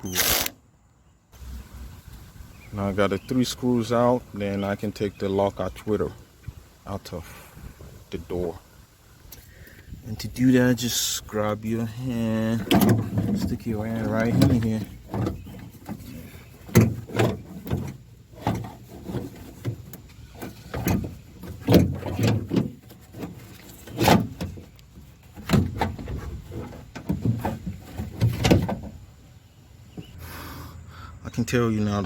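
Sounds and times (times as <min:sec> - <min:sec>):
clunks and rattles against metal panel: 0:11.7 - 0:29.2.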